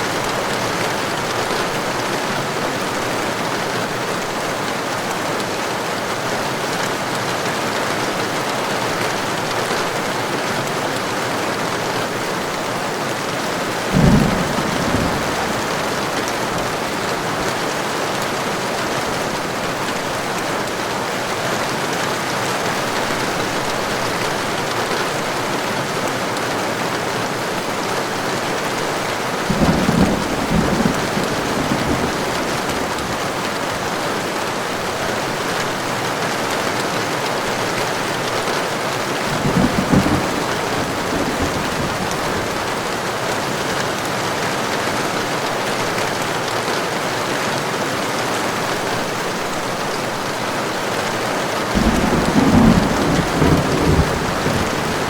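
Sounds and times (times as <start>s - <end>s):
heavy rain falling: 0.0s - 55.0s
thunder rumbling: 13.8s - 17.7s, 29.4s - 33.9s, 39.3s - 42.9s, 51.7s - 55.0s.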